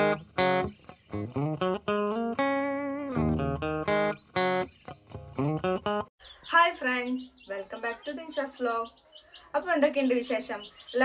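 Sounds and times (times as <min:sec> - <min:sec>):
plucked guitar melody: 0:00.0 - 0:06.1.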